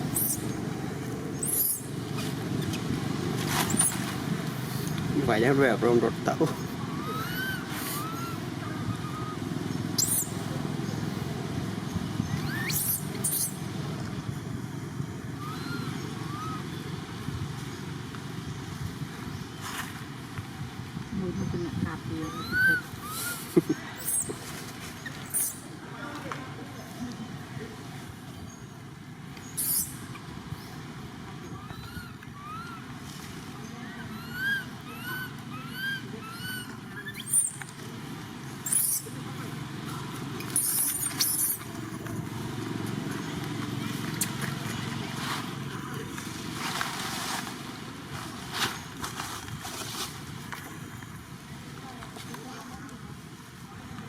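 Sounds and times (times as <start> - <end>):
short chirping calls: 0.0 - 0.7, 1.3 - 1.9, 3.6 - 5.0, 6.5 - 11.2, 11.9 - 13.6, 15.3 - 16.9, 21.4 - 25.7, 29.4 - 30.7, 31.4 - 32.9, 33.6 - 37.8, 38.6 - 39.2, 39.9 - 42.2
high hissing rustle: 0.0 - 5.1, 7.6 - 11.3, 44.0 - 50.4
short arching whistles: 0.1 - 0.4, 1.4 - 1.9, 3.6 - 4.0, 6.9 - 9.4, 10.0 - 10.4, 12.3 - 13.6, 15.4 - 16.6, 29.5 - 30.0, 34.1 - 37.6, 38.6 - 39.1, 40.4 - 41.7
sharp high squeak: 0.1 - 0.5, 1.4 - 1.9, 3.6 - 4.1, 6.9 - 9.4, 10.0 - 10.4, 12.2 - 13.6, 24.0 - 24.4, 25.0 - 25.7, 29.5 - 30.0, 34.1 - 37.7, 38.6 - 39.1, 40.4 - 41.7
rising chirp: 6.8 - 11.0, 12.2 - 13.6.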